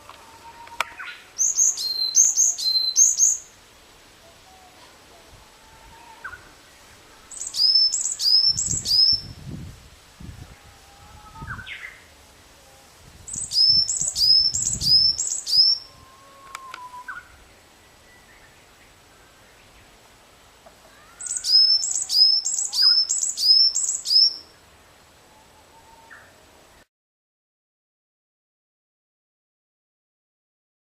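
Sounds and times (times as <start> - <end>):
bird singing high sliding notes: 7.3 - 9.4, 13.3 - 15.9, 21.2 - 24.5.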